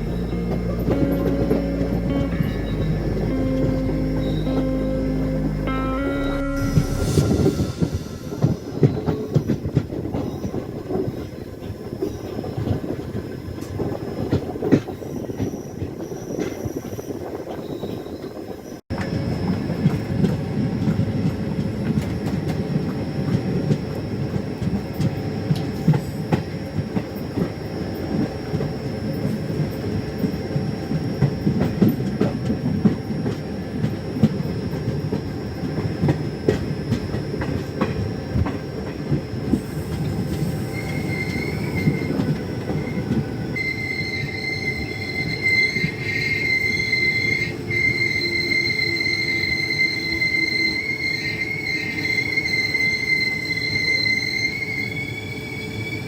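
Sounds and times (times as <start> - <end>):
high-pitched squeal: 0.0 - 10.6, 39.4 - 56.0
train wheels rumbling on rails: 0.0 - 56.0.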